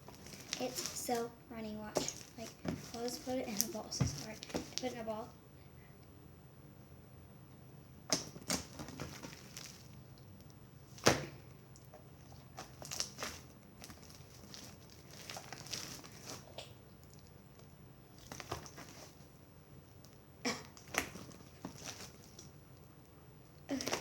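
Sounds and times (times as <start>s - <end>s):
slime squishing and popping: 11.0s - 17.3s.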